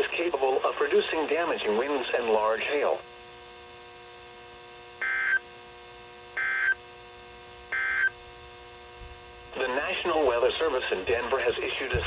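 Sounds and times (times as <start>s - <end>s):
receiver hum: 0.0s - 12.0s
digital data tone bursts: 5.0s - 5.5s, 6.4s - 6.8s, 7.7s - 8.2s.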